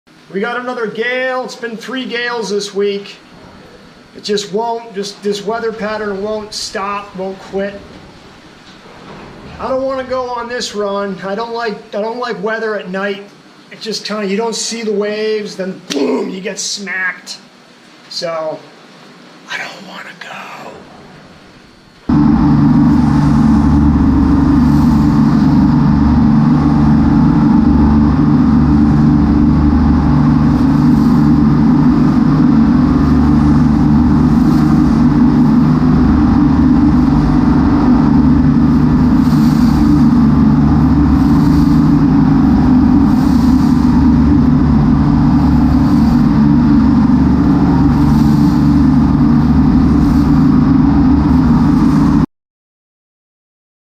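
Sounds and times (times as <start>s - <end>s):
boat engines running: 3.2s - 11.4s, 21.0s - 52.2s.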